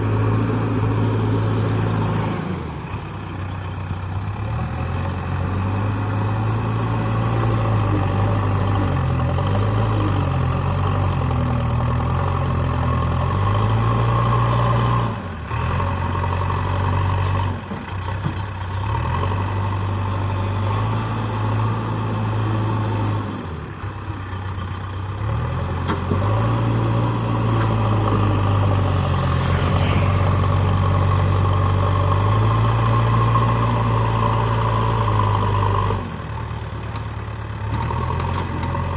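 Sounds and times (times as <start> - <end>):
diesel engine under hydraulic load: 0.0 - 38.9.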